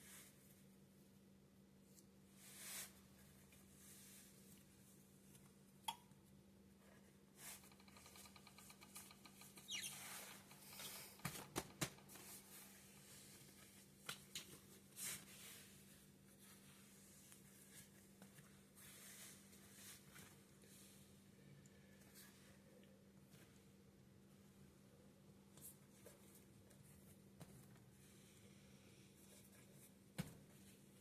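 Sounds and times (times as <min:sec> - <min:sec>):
faint steady hum: 0:00.0 - 0:31.0
dough clicks and crackles: 0:07.4 - 0:09.7.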